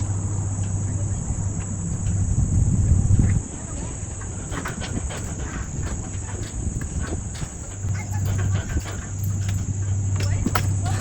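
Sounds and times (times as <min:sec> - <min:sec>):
high-pitched insect chorus: 0:00.0 - 0:11.0
low hum: 0:00.0 - 0:11.0
light clicks and knocks: 0:04.2 - 0:11.0.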